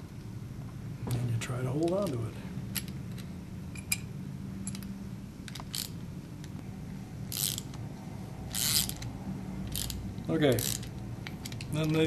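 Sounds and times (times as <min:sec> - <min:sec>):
ratchet wrench clicking: 0:05.5 - 0:06.0, 0:07.3 - 0:07.8, 0:08.5 - 0:09.1, 0:09.7 - 0:12.0.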